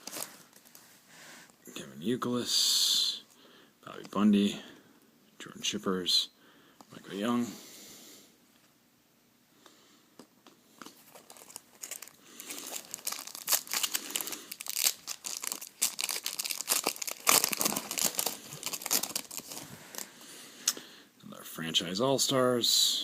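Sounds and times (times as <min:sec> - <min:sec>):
wrapper crinkling and tearing: 0:00.0 - 0:00.8, 0:10.8 - 0:20.2.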